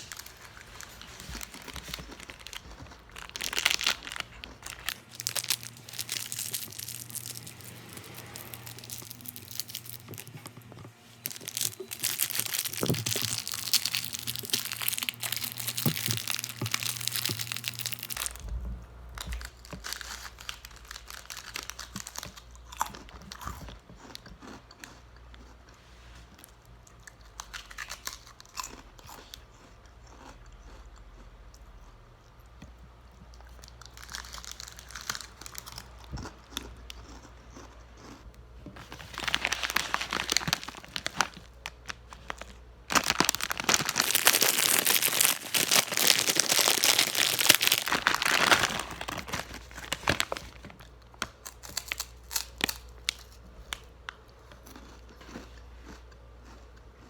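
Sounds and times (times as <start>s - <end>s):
plastic packaging crinkling: 0.0s - 18.5s, 19.2s - 22.4s, 38.8s - 53.8s.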